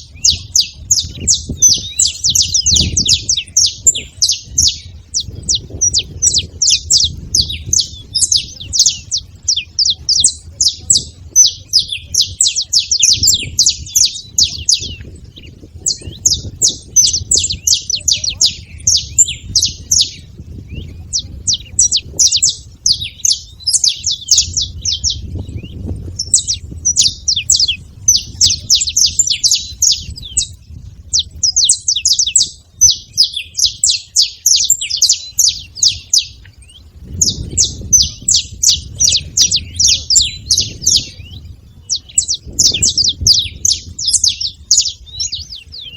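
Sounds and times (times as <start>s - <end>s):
finches chirping: 0.0s - 45.9s.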